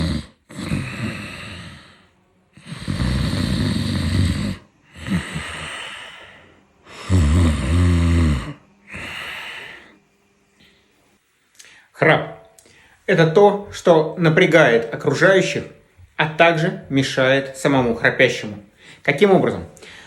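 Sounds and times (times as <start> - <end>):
person snoring: 0.0 - 10.0
quiet breaths: 0.0 - 20.0.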